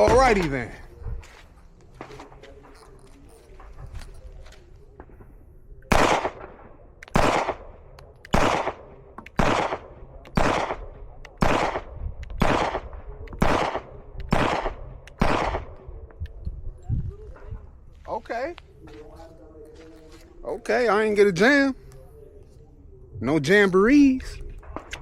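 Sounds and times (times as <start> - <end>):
pistol shots: 5.9 - 15.8.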